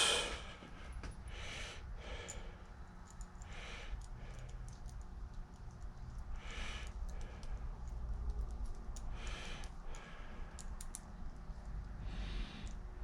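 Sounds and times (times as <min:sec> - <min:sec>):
soft hissing breaths: 0:00.0 - 0:05.0, 0:06.2 - 0:08.2, 0:09.0 - 0:13.0
faint small clicks: 0:02.3 - 0:12.0.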